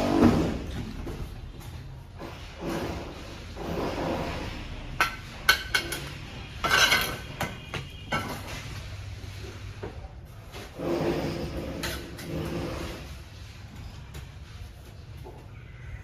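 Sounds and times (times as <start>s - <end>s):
masonry tools clinking on bricks: 4.9s - 8.6s.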